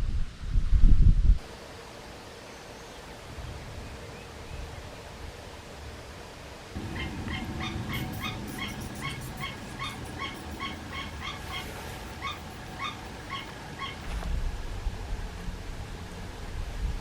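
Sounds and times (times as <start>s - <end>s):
animal yipping: 6.8s - 14.1s
low rumble: 6.8s - 17.0s.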